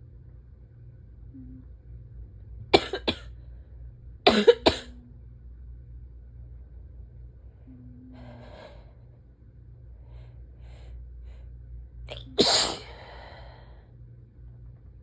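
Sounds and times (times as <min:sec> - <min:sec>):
person sneezing loudly: 0:12.1 - 0:13.0
breathy inhales: 0:12.8 - 0:13.9.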